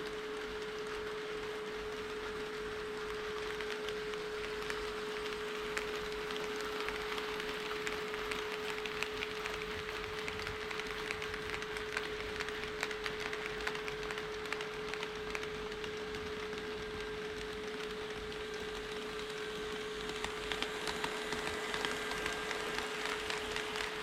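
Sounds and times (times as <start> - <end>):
model train wheels clicking: 0.0 - 24.0.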